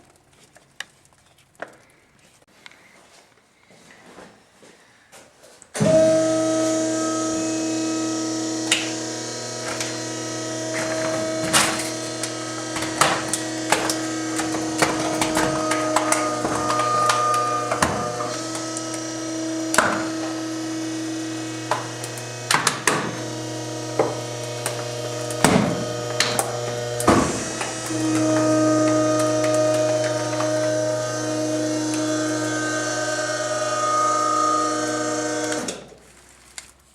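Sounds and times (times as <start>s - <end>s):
compactor motor humming: 5.8s - 36.0s
plastic cracking and snapping: 8.6s - 23.2s, 23.9s - 36.9s.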